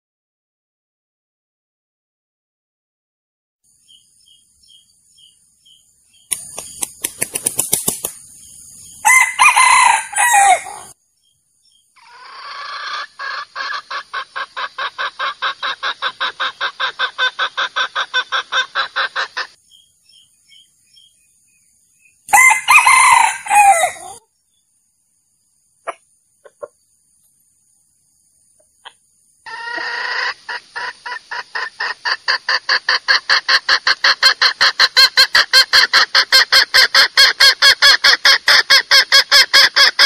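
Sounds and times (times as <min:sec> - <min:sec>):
quick clicks: 0:06.3 - 0:08.2
fast clucks: 0:06.3 - 0:08.4, 0:13.2 - 0:19.6, 0:29.7 - 0:40.0
rooster crowing: 0:09.0 - 0:11.0, 0:22.3 - 0:24.2.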